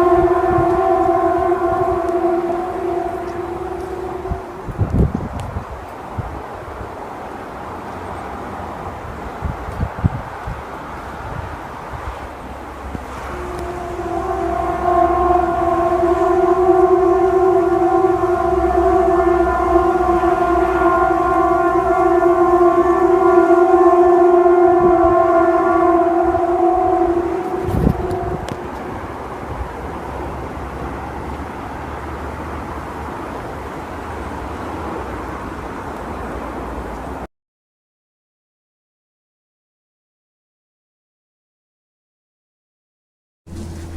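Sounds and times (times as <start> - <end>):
low rumble: 0.0 - 5.7, 12.4 - 29.9, 43.5 - 43.9
loud horn-like drone: 0.0 - 6.8, 11.1 - 35.9, 43.5 - 43.9.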